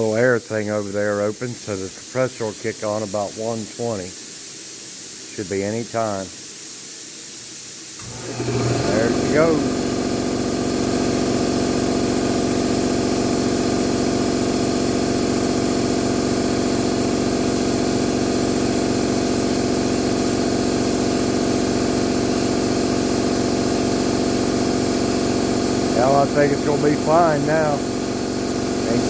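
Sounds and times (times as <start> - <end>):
air compressor motor hum: 0.0 - 29.0
compressor hiss: 0.0 - 29.0.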